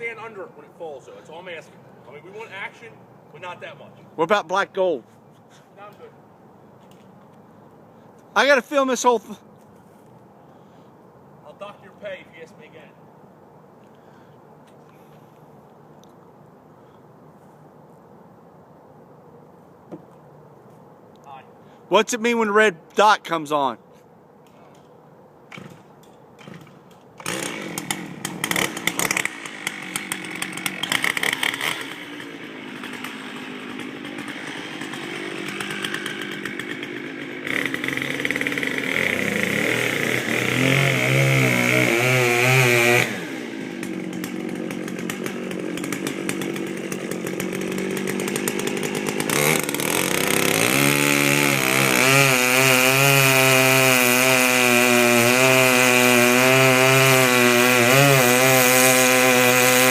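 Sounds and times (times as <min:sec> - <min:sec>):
chainsaw engine revving: 0:26.4 - 0:59.9.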